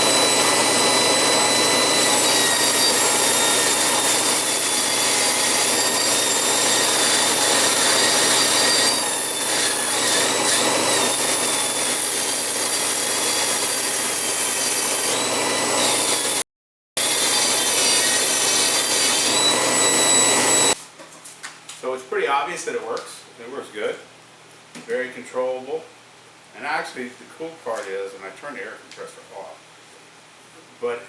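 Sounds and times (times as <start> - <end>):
air die grinder whining: 0.0 - 16.4, 17.0 - 20.8.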